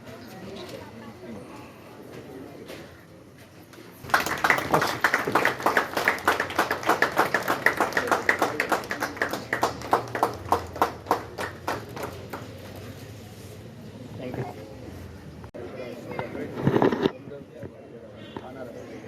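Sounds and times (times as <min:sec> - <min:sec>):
audience clapping: 0:04.0 - 0:13.0.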